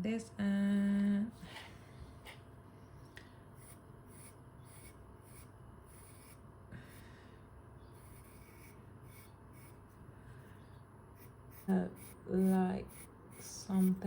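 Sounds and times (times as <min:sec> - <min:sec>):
pencil scratching on paper: 0:03.6 - 0:06.4, 0:07.8 - 0:10.0, 0:10.6 - 0:14.0.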